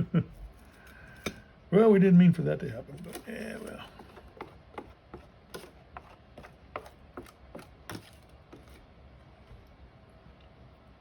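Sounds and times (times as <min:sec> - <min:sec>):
utensil tapping on plastic tray: 0:04.0 - 0:08.1.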